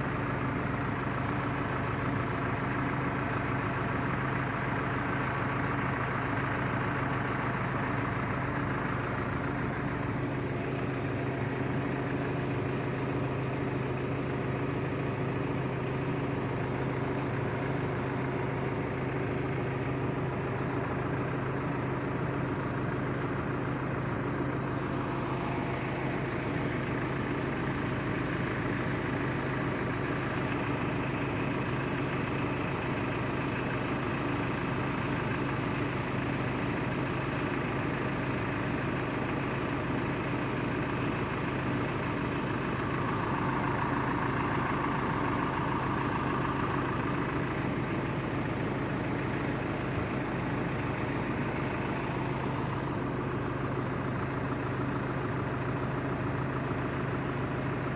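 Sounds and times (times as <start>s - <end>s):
diesel engine humming: 0.0s - 57.9s.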